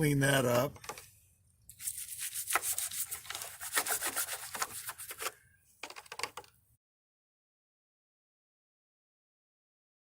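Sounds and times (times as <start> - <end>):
brush scrubbing metal terminal: 1.7 - 5.3.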